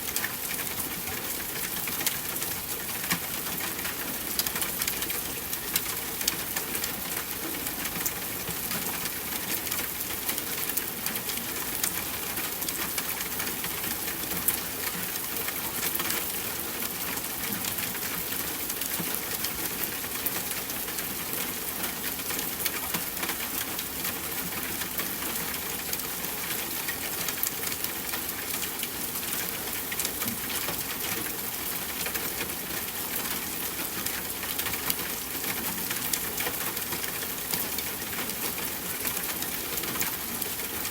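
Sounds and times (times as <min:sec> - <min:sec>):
steady rain falling: 0:00.0 - 0:40.9.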